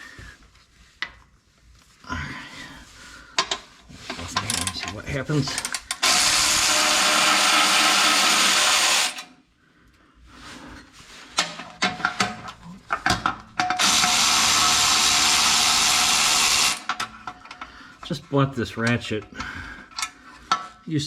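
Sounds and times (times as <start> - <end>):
electric ratchet spinning: 5.6 - 9.4, 13.6 - 17.1.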